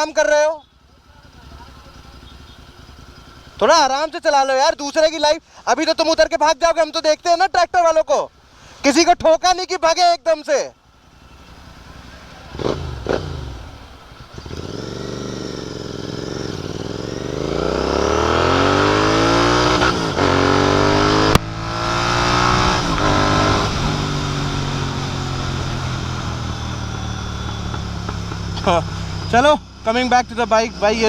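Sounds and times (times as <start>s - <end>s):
motorcycle engine accelerating: 0.9s - 3.9s, 11.0s - 31.0s.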